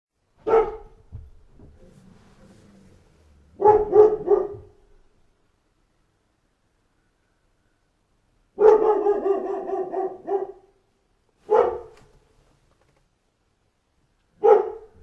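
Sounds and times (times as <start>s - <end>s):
dog barking: 0.4s - 1.1s, 3.5s - 5.0s, 8.5s - 10.8s, 11.4s - 12.1s, 14.4s - 15.0s.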